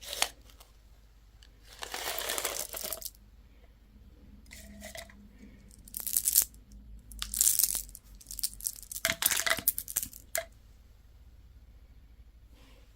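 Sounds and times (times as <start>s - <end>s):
candy wrapper crinkling: 1.7s - 3.2s, 5.8s - 10.5s.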